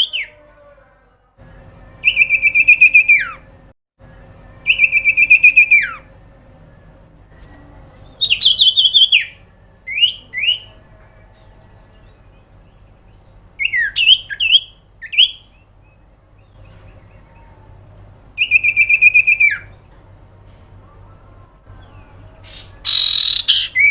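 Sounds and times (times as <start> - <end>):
bird calling with trills: 0.0 - 0.3, 2.0 - 3.5, 4.6 - 6.2, 8.0 - 10.8, 13.2 - 17.8, 18.4 - 20.1, 21.8 - 23.9.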